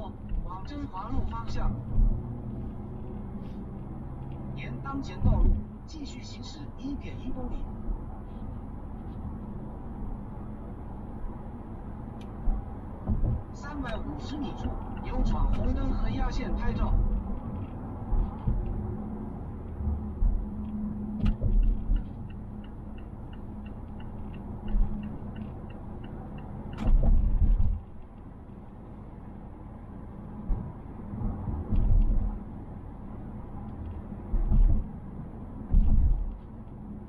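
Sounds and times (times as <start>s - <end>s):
car cabin road rumble: 0.0s - 37.0s
thumps over bumps: 5.2s - 5.7s, 13.0s - 14.0s, 17.0s - 18.8s, 21.2s - 22.2s, 26.7s - 27.9s, 31.6s - 32.4s, 34.3s - 34.9s, 35.6s - 36.5s
sharp interior knocks: 13.0s - 13.5s
faint regular ticking: 21.9s - 26.8s.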